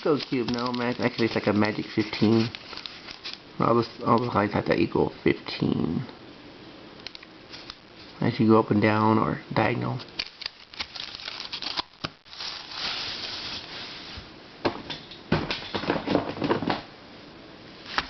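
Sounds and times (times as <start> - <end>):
rustling: 0.0 - 4.8, 10.0 - 14.3.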